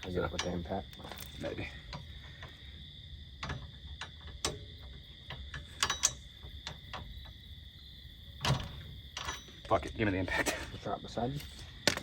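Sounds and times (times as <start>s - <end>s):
metallic clicks of hand tools: 5.3s - 7.0s.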